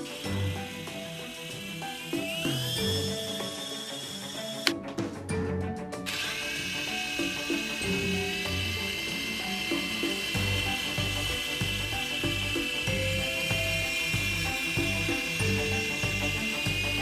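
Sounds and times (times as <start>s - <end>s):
toy helicopter rotor whine: 0.0s - 4.7s, 6.0s - 17.0s
music with steady bass beat: 6.7s - 17.0s.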